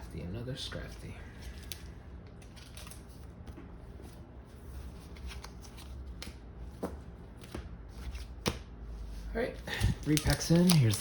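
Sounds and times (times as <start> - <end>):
trading cards rustling: 1.4 - 3.4, 9.7 - 11.0.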